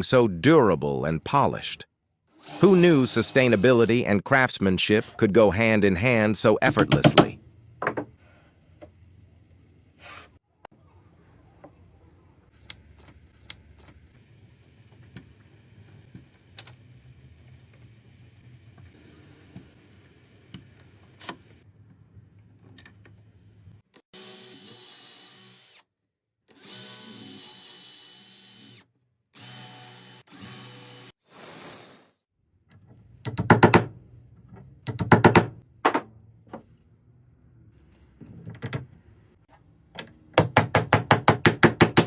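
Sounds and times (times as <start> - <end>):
electric drill boring into wood: 2.4 - 3.9, 24.2 - 25.8, 26.5 - 28.8, 29.4 - 31.2.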